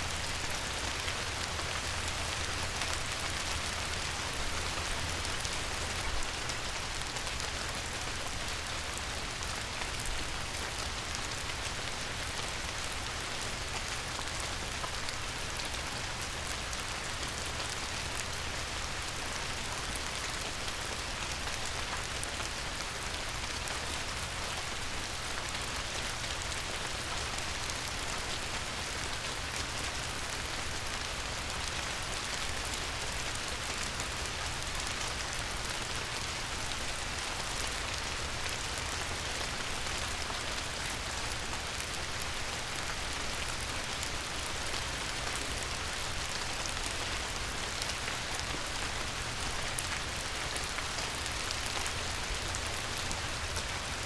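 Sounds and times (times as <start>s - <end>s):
light rain on river water: 0.0s - 54.0s.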